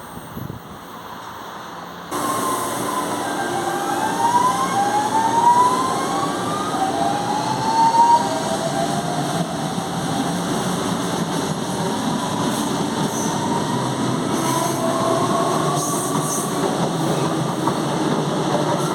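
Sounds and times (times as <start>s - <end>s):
train running noise: 0.0s - 18.9s.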